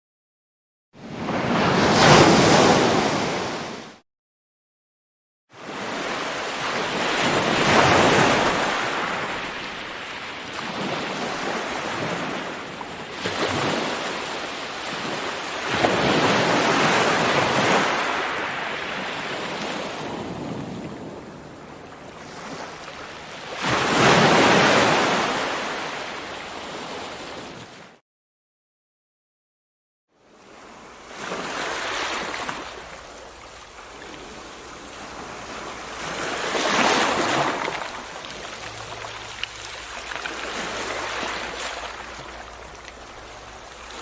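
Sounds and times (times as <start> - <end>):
ocean waves breaking on shore: 1.0 - 4.0, 5.5 - 28.0, 30.2 - 44.0.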